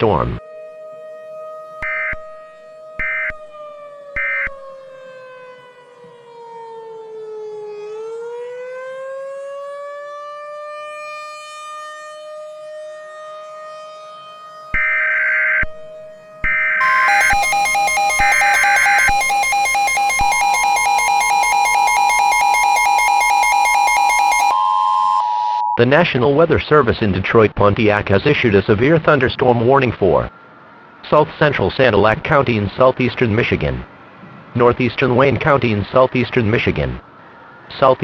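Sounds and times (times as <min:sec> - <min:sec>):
siren tone: 0:03.0 - 0:05.4, 0:14.7 - 0:15.8, 0:16.4 - 0:25.8
digital data bursts: 0:16.8 - 0:25.7
two-tone attention signal: 0:16.8 - 0:25.8.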